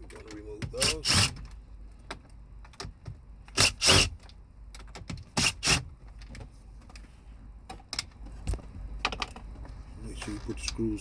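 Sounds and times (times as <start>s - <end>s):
power screwdriver whirring: 0.8s - 1.4s, 3.5s - 4.2s, 5.4s - 5.9s.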